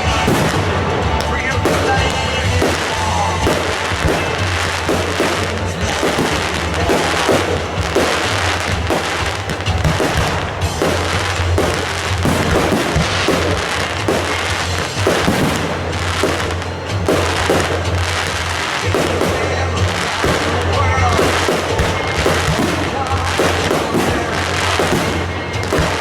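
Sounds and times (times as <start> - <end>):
fireworks crackling and banging: 0.0 - 26.0.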